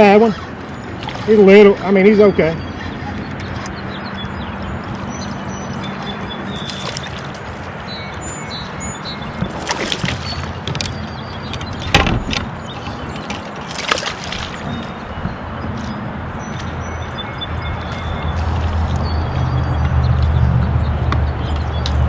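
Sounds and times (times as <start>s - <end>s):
water splashes: 0.6s - 2.0s, 5.5s - 15.4s.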